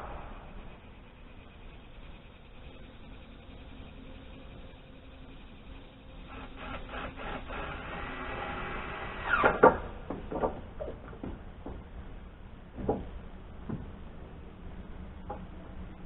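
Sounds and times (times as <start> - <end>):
board scraping and squeaking on wood: 6.3 - 11.2
wood-on-wood knocks: 12.8 - 13.1.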